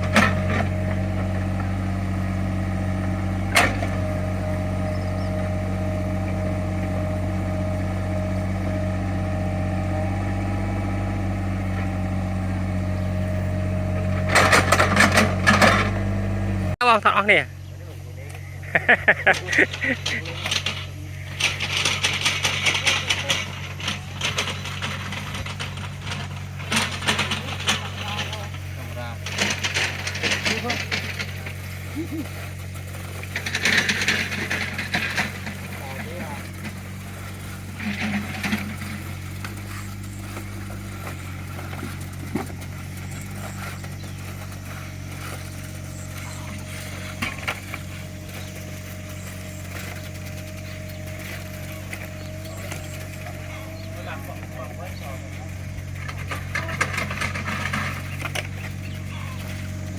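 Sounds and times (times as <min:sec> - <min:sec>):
metallic rattling and clanking: 0:00.0 - 0:16.4, 0:18.7 - 0:59.9
excavator diesel engine running: 0:00.0 - 0:59.9
sharp knocks and clanks: 0:13.8 - 0:16.2, 0:19.3 - 0:31.6.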